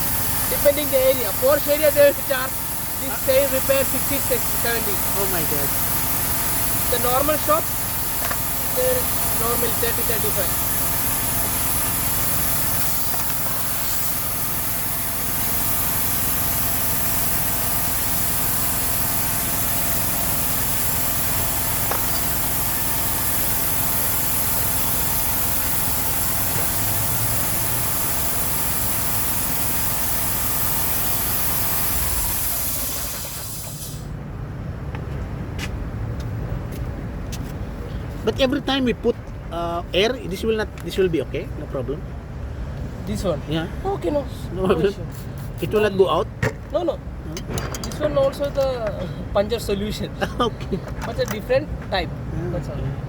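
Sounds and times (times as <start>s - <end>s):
compressed air hissing from hose: 0.0s - 34.2s, 44.8s - 45.8s
engine running: 0.0s - 34.7s.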